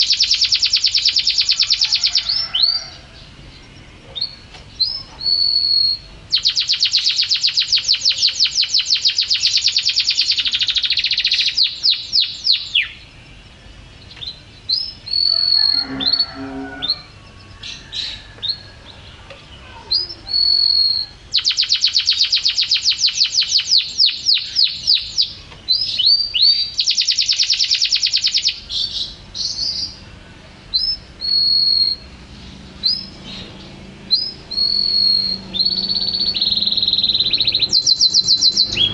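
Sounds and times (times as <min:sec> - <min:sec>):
canary trilling: 0:00.0 - 0:13.2, 0:14.0 - 0:30.0, 0:30.7 - 0:38.9.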